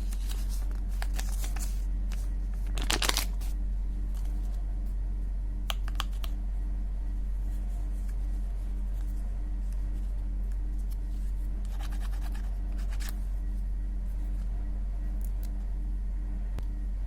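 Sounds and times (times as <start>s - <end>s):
low electrical hum: 0.0s - 17.0s
packaging crackling and clicking: 2.6s - 3.5s
faint pulsing tone: 12.4s - 17.0s.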